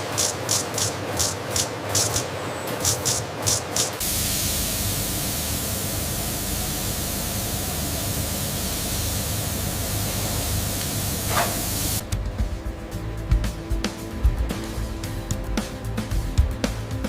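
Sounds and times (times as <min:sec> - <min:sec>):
steady hiss: 0:02.8 - 0:12.0.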